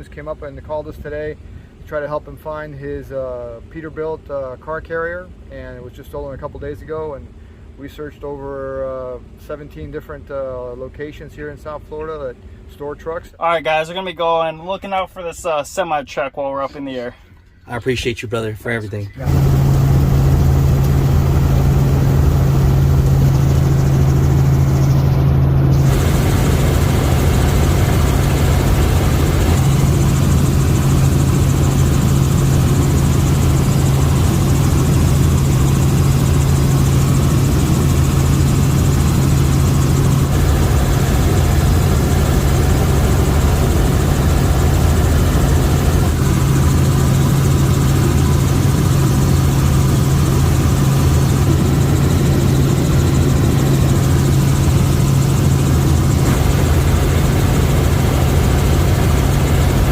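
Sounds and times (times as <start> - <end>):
helicopter engine and rotor: 19.1 - 59.9.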